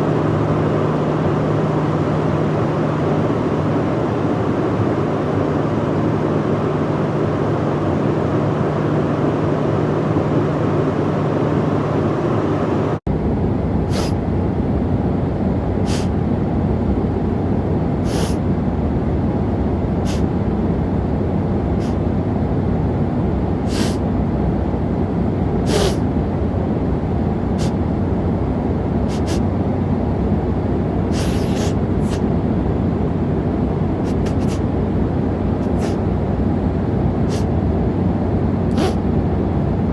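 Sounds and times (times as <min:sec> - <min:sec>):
aircraft cabin drone: 0:00.0 - 0:39.9
man sniffing: 0:13.9 - 0:14.2, 0:15.9 - 0:16.1, 0:18.0 - 0:18.4, 0:20.1 - 0:20.3, 0:23.7 - 0:24.0, 0:25.7 - 0:26.0, 0:29.1 - 0:29.5, 0:31.1 - 0:32.2, 0:34.0 - 0:34.6, 0:35.6 - 0:36.0, 0:37.3 - 0:37.5, 0:38.7 - 0:39.0.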